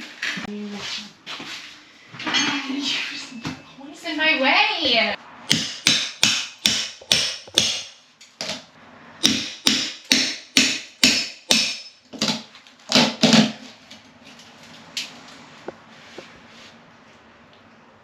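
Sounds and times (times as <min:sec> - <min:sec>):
hammer blows: 0:09.2 - 0:12.0.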